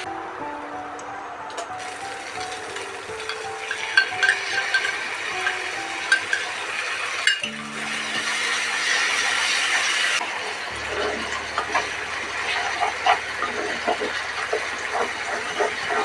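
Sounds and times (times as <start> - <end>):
soft background music: 0.0 - 10.2
food sizzling in a pan: 1.7 - 16.0
metal utensil clinking on pan: 2.4 - 6.6, 7.2 - 7.6.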